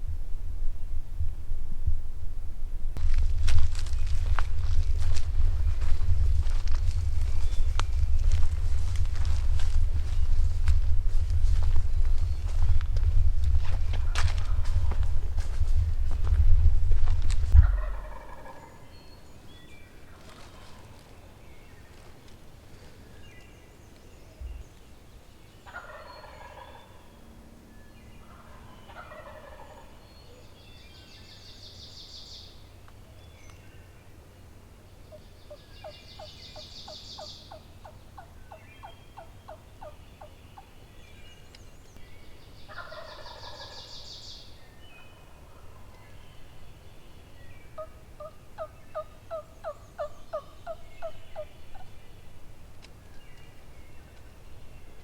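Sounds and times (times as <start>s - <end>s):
turkeys gobbling: 17.6s - 18.8s, 25.7s - 27.0s, 28.3s - 30.0s, 35.1s - 40.3s, 42.7s - 43.9s, 47.8s - 51.9s.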